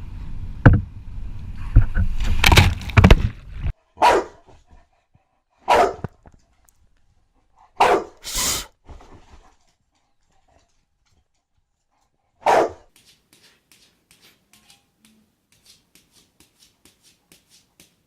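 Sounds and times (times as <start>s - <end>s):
dog barking: 4.0s - 4.5s, 5.6s - 6.1s, 7.8s - 8.2s, 12.4s - 12.9s.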